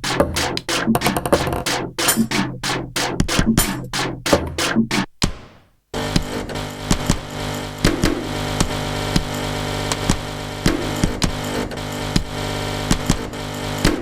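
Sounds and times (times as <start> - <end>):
looped clicks and knocks: 0.0 - 5.5.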